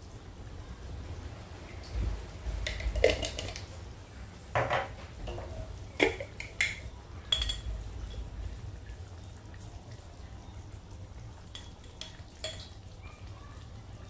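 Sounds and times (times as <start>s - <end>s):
metal utensil clinking on cookware: 2.7s - 3.6s, 6.0s - 8.3s, 11.5s - 12.8s.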